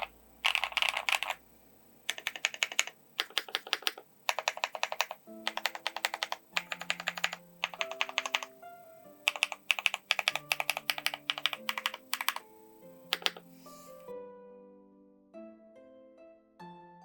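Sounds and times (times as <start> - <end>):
keyboard key clicks: 0.0 - 1.4, 2.1 - 8.5, 9.3 - 12.4, 13.1 - 13.5
soft background music: 4.3 - 17.0.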